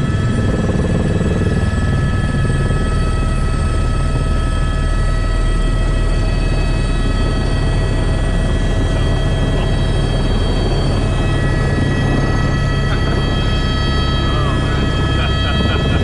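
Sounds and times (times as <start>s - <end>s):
helicopter rotor and engine drone: 0.0s - 16.0s
high whines: 10.3s - 16.0s.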